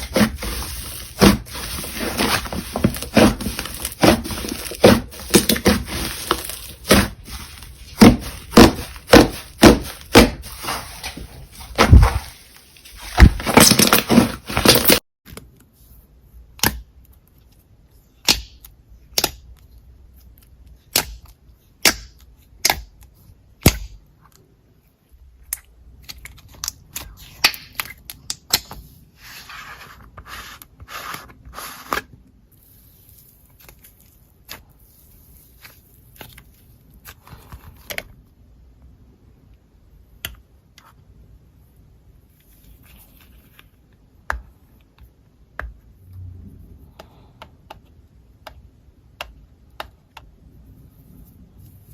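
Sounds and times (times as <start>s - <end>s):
slime popping and squishing: 0.1s - 14.9s.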